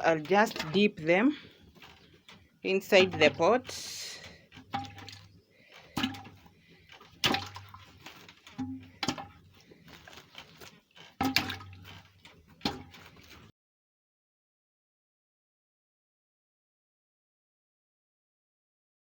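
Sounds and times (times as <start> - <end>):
potatoes splashing into water: 2.8 - 6.4, 7.0 - 9.4, 11.2 - 13.5.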